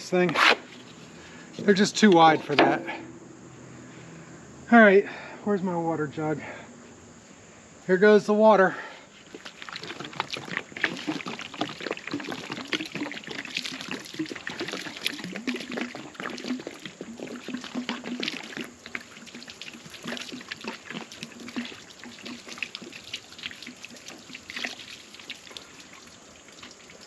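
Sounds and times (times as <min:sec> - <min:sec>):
water splashing on wood: 0:09.2 - 0:27.0.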